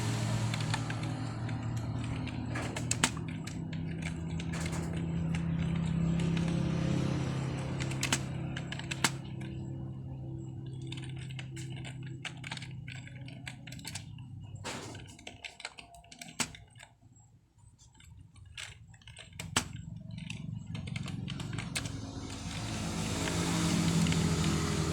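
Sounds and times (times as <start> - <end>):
broad rushing noise: 0.0 - 3.2, 21.0 - 24.9
keyboard typing: 0.0 - 24.9
low steady hum: 0.0 - 24.9.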